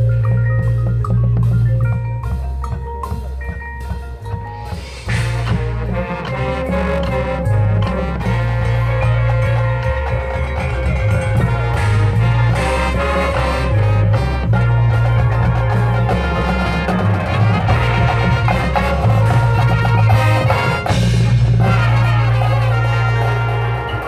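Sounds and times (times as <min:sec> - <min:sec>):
brass chords: 0:00.0 - 0:24.0
drums: 0:00.0 - 0:24.0
mallet percussion: 0:00.0 - 0:24.0
marching band playing: 0:00.0 - 0:24.0.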